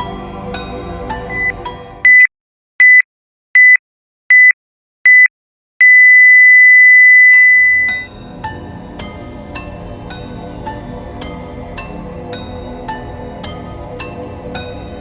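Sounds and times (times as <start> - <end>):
background music: 0.0 - 2.2, 7.6 - 15.0.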